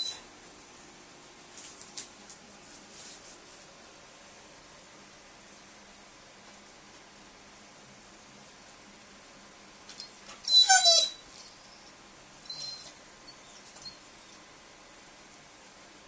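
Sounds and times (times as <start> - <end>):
dog whining: 0.0 - 0.3, 10.0 - 14.5.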